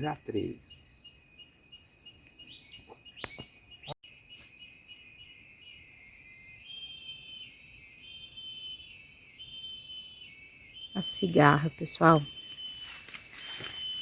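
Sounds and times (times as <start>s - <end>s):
cicada buzzing: 0.0s - 14.0s
insect chorus chirping: 0.0s - 14.0s.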